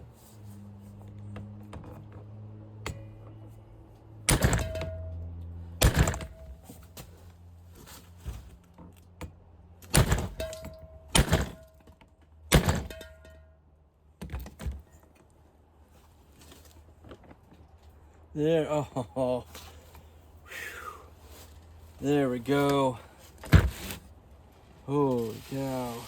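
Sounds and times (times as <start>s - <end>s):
low steady hum: 0.0s - 26.0s
sharp metal-on-metal knocks: 2.8s - 3.4s, 4.3s - 6.7s, 9.8s - 11.9s, 12.5s - 13.5s.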